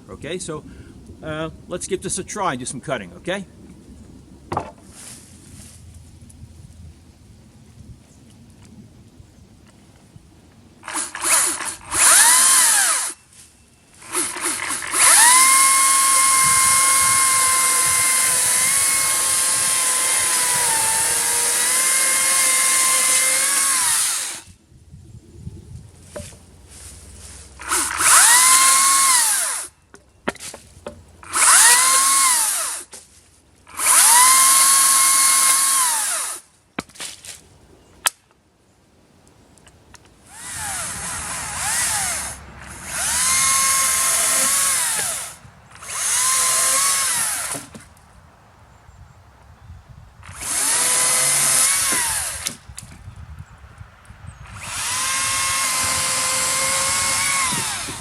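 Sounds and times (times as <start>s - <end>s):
electric chainsaw whine: 10.8s - 13.3s, 13.9s - 24.6s, 27.6s - 29.7s, 31.2s - 32.9s, 33.7s - 36.5s, 40.2s - 47.8s, 50.2s - 52.7s, 54.4s - 58.0s.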